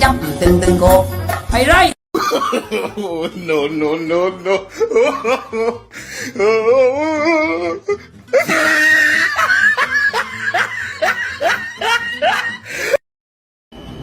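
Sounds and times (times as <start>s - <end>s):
bursts of laughter: 8.3s - 13.0s.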